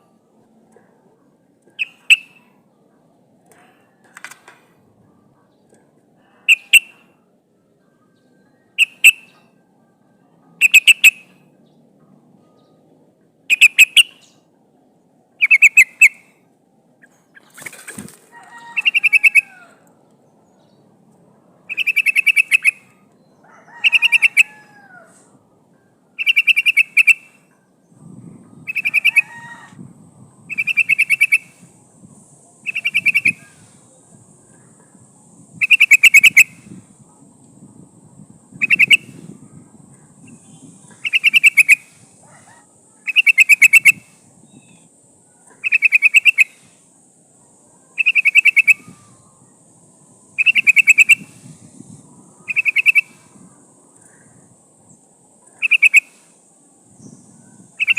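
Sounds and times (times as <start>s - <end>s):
bird chattering calls: 1.7s - 2.5s, 6.4s - 7.0s, 8.8s - 9.4s, 10.6s - 11.3s, 13.5s - 14.4s, 15.4s - 16.2s, 18.7s - 19.7s, 21.7s - 22.9s, 26.2s - 27.3s, 28.6s - 29.4s, 30.5s - 31.6s, 32.6s - 33.6s, 34.7s - 36.8s, 38.5s - 39.3s, 40.1s - 44.9s, 45.5s - 46.7s, 47.9s - 49.3s, 50.3s - 51.3s, 52.4s - 53.4s, 55.5s - 56.2s, 57.6s - 57.9s.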